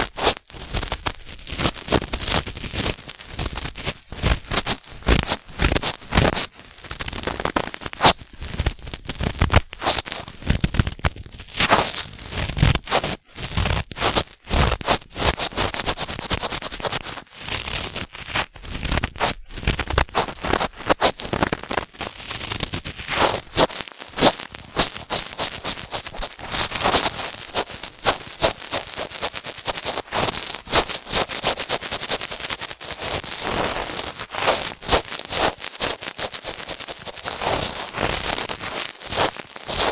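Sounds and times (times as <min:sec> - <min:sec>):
cotton swab scratching microphone: 0:22.9 - 0:39.9.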